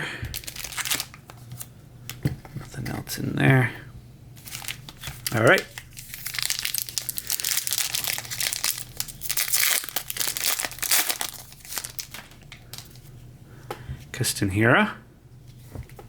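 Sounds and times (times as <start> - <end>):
foil wrapper crinkling and tearing: 0.3 - 1.7, 4.4 - 13.0.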